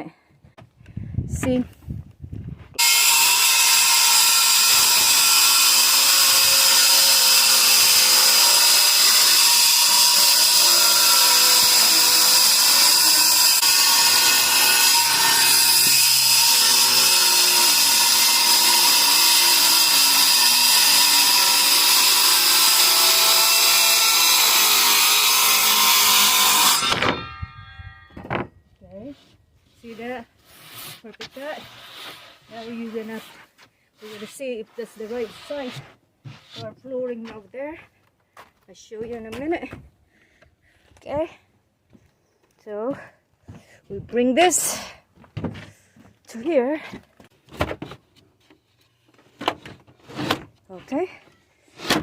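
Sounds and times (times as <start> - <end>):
circular saw cutting wood: 2.8 - 27.8, 29.0 - 36.8.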